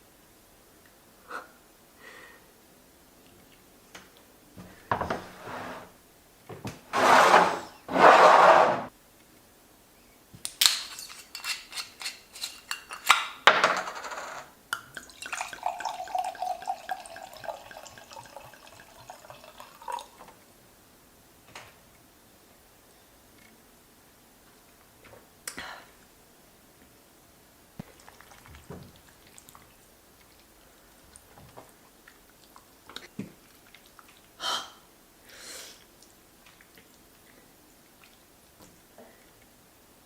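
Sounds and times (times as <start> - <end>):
utensil clinking on plate: 10.6 - 13.2.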